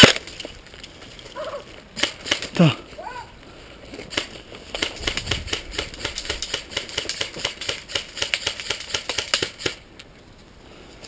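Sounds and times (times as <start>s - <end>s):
airsoft guns firing: 4.1s - 9.8s.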